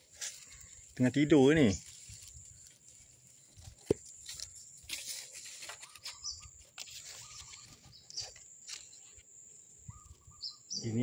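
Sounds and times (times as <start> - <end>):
high bird chirps: 5.8 - 8.4, 9.8 - 11.0.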